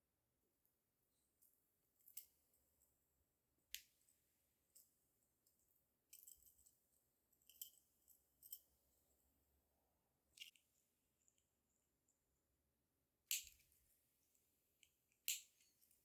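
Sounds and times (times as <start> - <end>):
small metallic tool clicks: 13.3 - 13.6, 15.2 - 15.7.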